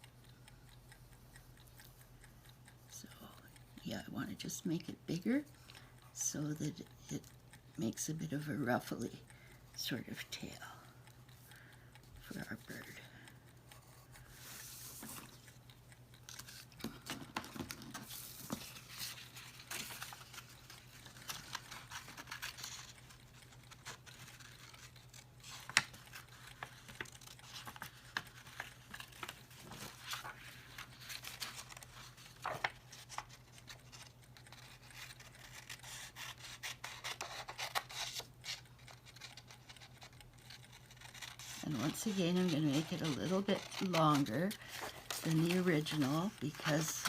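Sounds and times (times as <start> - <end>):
paper rustling: 14.4 - 15.4, 16.3 - 47.0
scissors snipping paper: 16.2 - 47.0.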